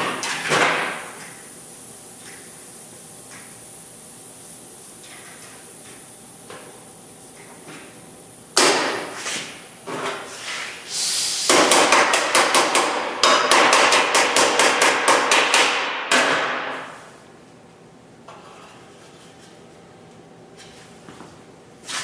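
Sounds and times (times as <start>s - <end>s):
hammer striking sheet metal: 8.6s - 9.1s, 11.5s - 17.0s.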